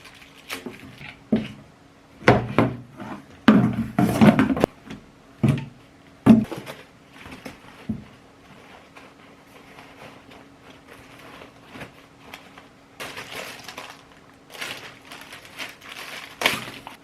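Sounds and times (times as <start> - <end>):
packaging rustling and clattering: 0.0 - 1.2, 6.4 - 17.0
faint steady hum: 0.0 - 17.0.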